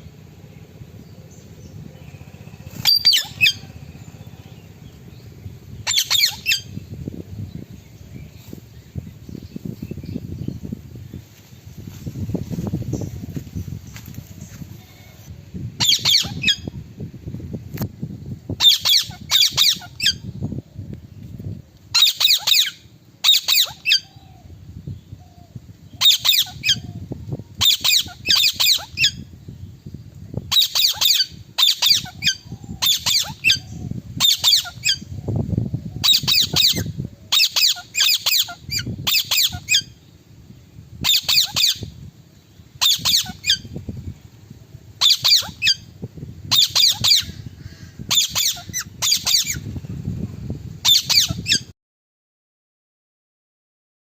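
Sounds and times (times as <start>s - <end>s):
parakeet squawking: 2.8s - 3.8s, 5.8s - 6.7s, 15.8s - 16.7s, 18.6s - 20.2s, 22.0s - 24.1s, 26.0s - 26.8s, 27.6s - 29.2s, 30.5s - 35.1s, 36.0s - 40.0s, 41.0s - 41.9s, 42.8s - 43.7s, 45.0s - 45.9s, 46.5s - 47.4s, 48.1s - 49.6s, 50.8s - 51.7s.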